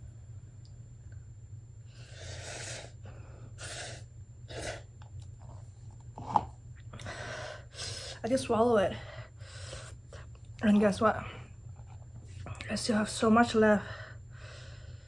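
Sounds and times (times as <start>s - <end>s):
woman breathing hard: 7.0s - 8.2s, 9.0s - 10.0s, 13.8s - 15.0s.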